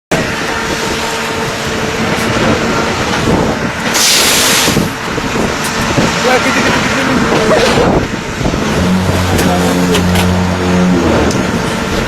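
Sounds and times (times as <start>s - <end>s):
burst of hiss: 3.9s - 4.9s.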